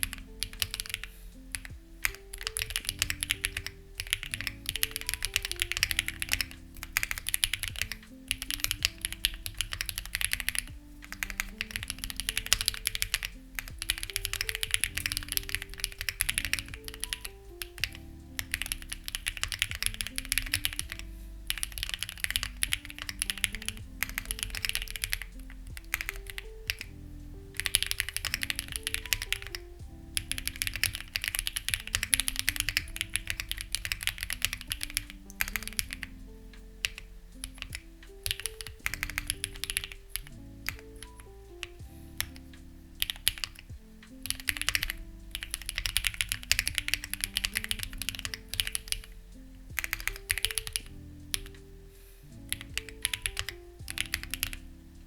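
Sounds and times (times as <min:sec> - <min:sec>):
mechanical keyboard typing: 0:00.0 - 0:51.6, 0:52.4 - 0:54.7
soft background music: 0:00.0 - 0:55.0.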